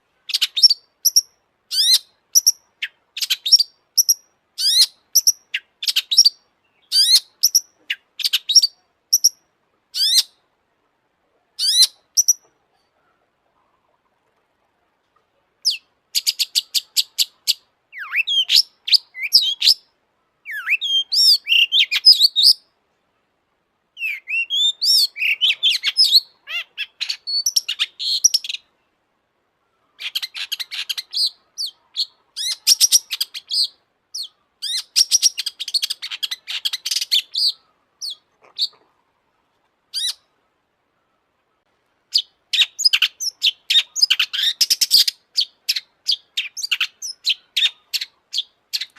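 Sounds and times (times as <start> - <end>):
bird singing harsh chattering: 0.3 - 9.4, 11.6 - 12.4, 24.0 - 28.6, 30.0 - 38.8, 39.9 - 40.3, 42.1 - 48.9.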